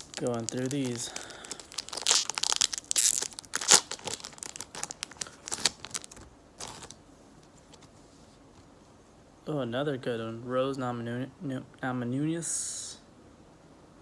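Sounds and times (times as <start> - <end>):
foil wrapper crinkling and tearing: 0.0 - 7.0.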